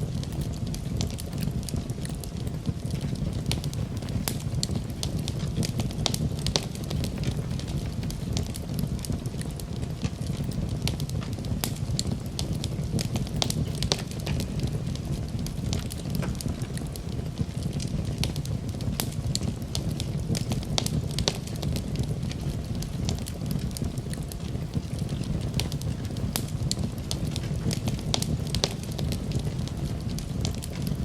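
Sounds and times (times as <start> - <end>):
campfire crackling and popping: 0.0 - 31.0.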